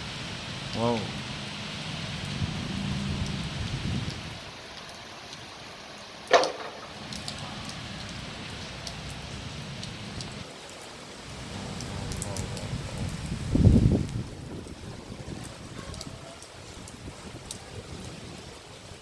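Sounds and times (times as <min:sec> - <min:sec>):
wind gusts rumbling: 0:00.0 - 0:05.0, 0:11.3 - 0:19.0
heavy rain in strong wind: 0:00.0 - 0:19.0.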